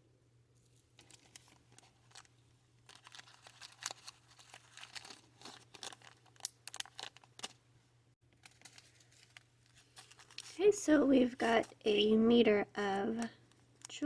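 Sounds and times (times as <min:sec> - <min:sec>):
plastic bag crinkling: 0:00.6 - 0:07.6, 0:08.3 - 0:12.2.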